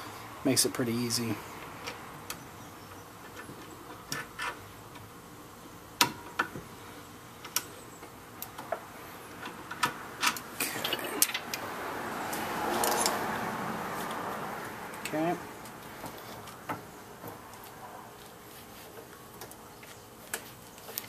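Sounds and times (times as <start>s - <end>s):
soft rustle: 17.6s - 19.2s.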